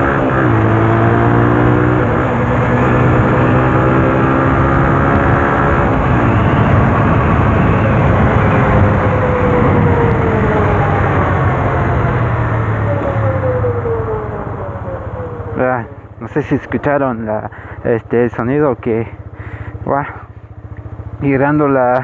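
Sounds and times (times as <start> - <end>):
motorcycle engine: 0.0 - 22.0
wind and road noise: 0.0 - 22.0
whine sliding down in pitch: 5.2 - 15.6.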